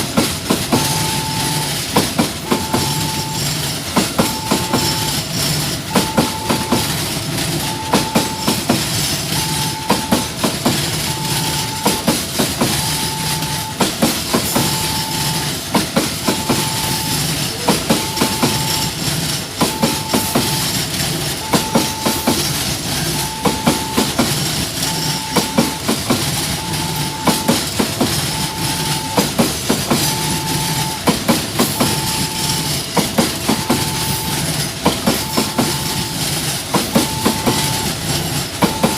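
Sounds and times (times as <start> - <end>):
level crossing alarm beeping: 0.0 - 38.9
train wheels clickety-clack: 0.0 - 38.9.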